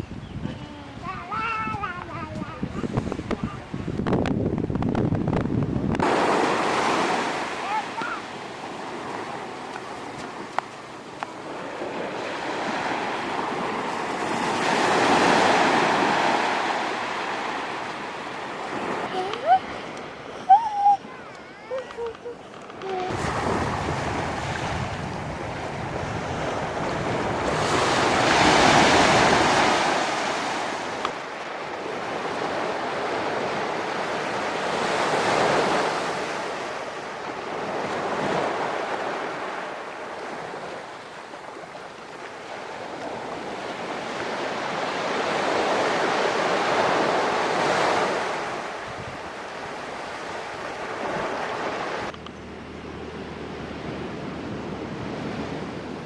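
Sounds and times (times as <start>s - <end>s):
wind noise on microphone: 0.0s - 7.5s, 20.5s - 39.6s, 42.8s - 52.3s
ocean surf breaking on beach: 0.8s - 52.2s.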